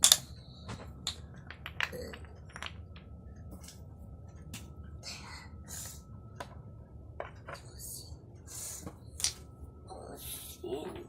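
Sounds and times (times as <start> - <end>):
wooden toy blocks knocking together: 0.0 - 0.3, 1.0 - 3.0.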